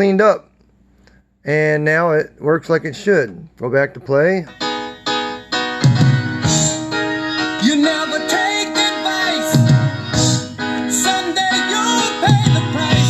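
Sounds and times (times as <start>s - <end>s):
rock song with piano and singing: 5.8s - 13.0s.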